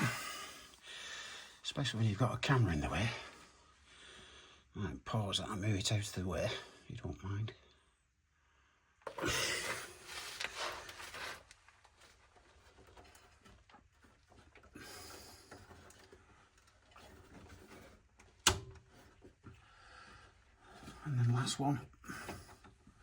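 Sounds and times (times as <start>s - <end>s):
hands rustling and scraping: 9.5s - 14.6s.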